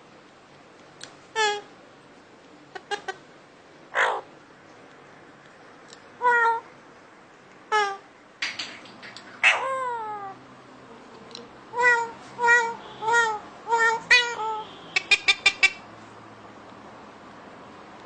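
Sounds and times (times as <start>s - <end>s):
parrot squawking and chirping: 1.3s - 1.7s, 2.7s - 3.2s, 3.9s - 4.3s, 6.2s - 6.6s, 7.7s - 10.4s, 11.7s - 15.9s.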